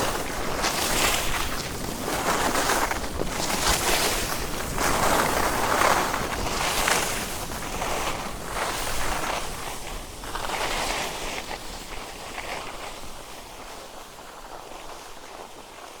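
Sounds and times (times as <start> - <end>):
skis carving on snow: 0.0 - 11.2.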